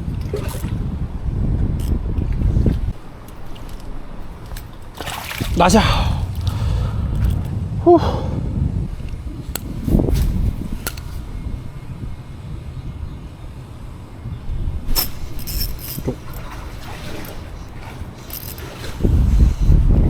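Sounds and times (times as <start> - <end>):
wind rumbling on microphone: 0.0 - 20.0
handling clicks and knocks: 1.8 - 5.7, 9.5 - 11.2, 14.9 - 19.0.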